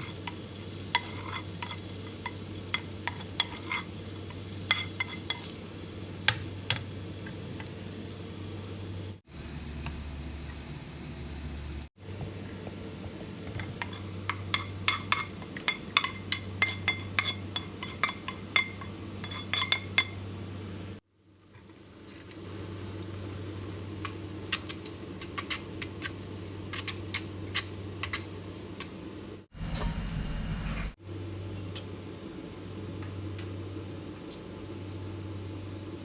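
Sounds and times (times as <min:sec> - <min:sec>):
steady low hum: 0:29.1 - 0:33.7.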